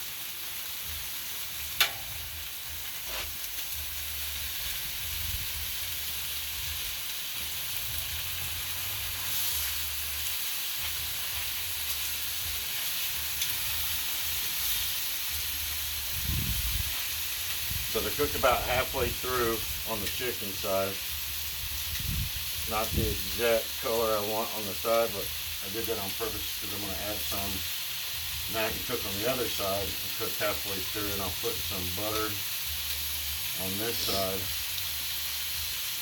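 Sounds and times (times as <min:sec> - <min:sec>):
meat sizzling on a griddle: 0:00.0 - 0:36.0
sharp click: 0:01.8 - 0:02.1.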